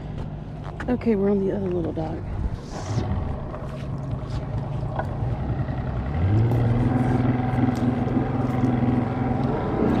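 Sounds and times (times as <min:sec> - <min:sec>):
engine idling and revving: 0:00.0 - 0:10.0.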